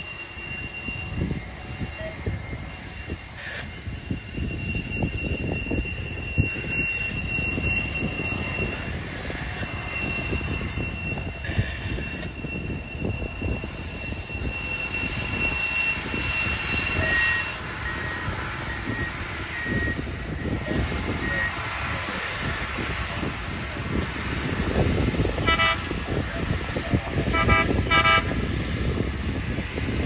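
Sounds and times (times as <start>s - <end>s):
short beeps: 0.0s - 21.7s
steady high whine: 0.0s - 30.0s
train rumbling past: 0.0s - 30.0s.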